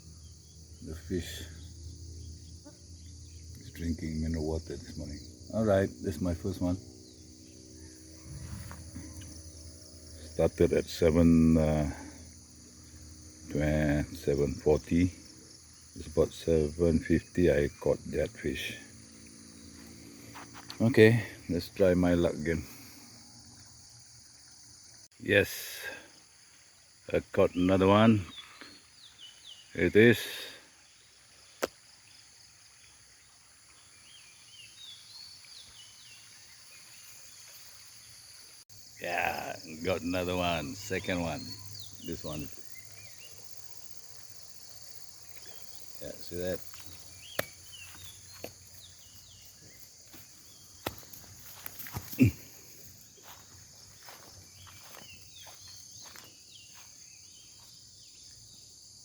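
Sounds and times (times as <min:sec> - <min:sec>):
insects buzzing: 0:00.0 - 0:59.0
bird chirping: 0:39.5 - 0:53.3.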